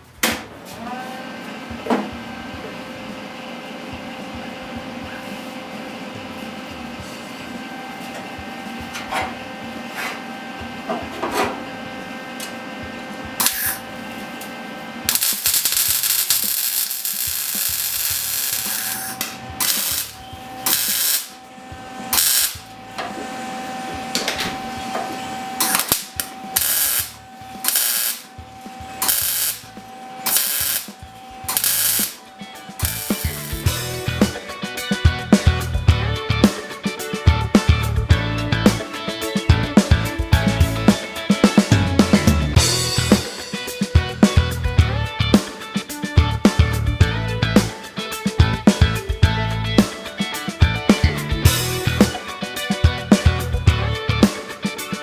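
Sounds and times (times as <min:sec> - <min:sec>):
welding arc crackling: 0:13.4 - 0:14.5, 0:15.1 - 0:23.0, 0:25.4 - 0:34.3.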